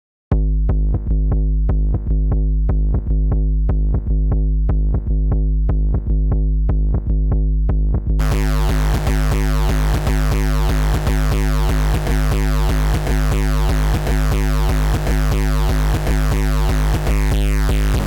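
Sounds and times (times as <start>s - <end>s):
drum machine and synthesizer loop: 8.2s - 18.0s.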